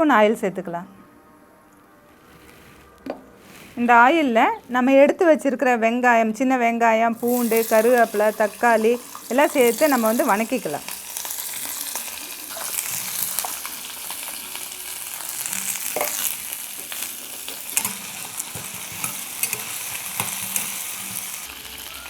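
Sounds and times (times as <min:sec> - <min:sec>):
spoon scraping and stirring: 0:02.2 - 0:04.4, 0:15.4 - 0:21.5
food sizzling in oil: 0:07.2 - 0:22.0.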